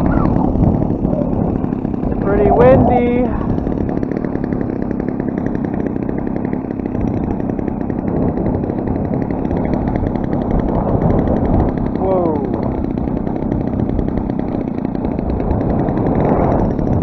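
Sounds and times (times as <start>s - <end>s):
two-stroke engine running: 0.0s - 17.0s
wind buffeting microphone: 0.0s - 17.0s.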